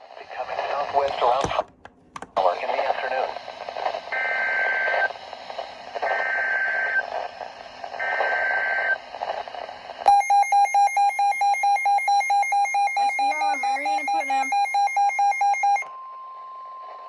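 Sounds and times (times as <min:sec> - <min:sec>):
radio static: 0:00.0 - 0:01.7, 0:02.4 - 0:10.0, 0:13.3 - 0:14.5
electronic alarm beeps: 0:10.1 - 0:15.9.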